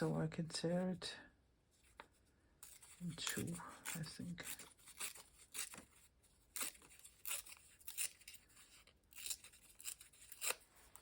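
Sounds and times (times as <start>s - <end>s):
paper tearing: 2.6s - 11.0s.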